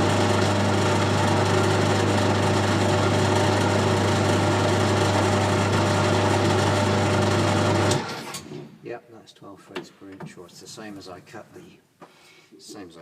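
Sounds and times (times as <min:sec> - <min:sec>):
lathe running with low hum: 0:00.0 - 0:08.0.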